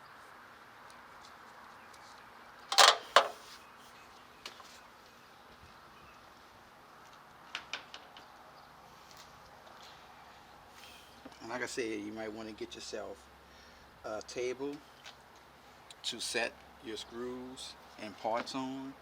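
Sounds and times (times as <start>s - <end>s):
tools clinking against metal: 2.7s - 3.4s.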